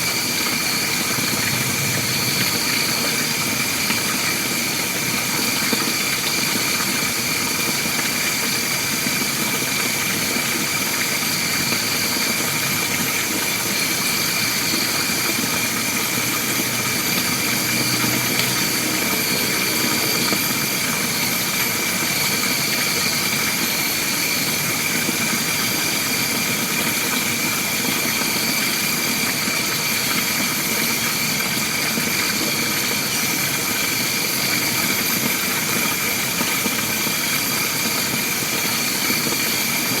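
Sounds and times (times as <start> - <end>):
insects droning: 0.1 - 5.7, 11.1 - 25.0.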